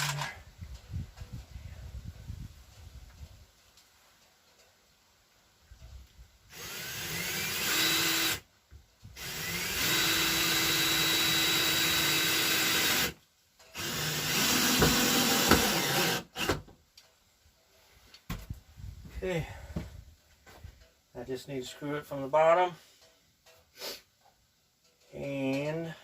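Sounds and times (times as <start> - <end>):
power drill driving screws: 0.0 - 0.3, 6.5 - 8.4, 9.2 - 16.7.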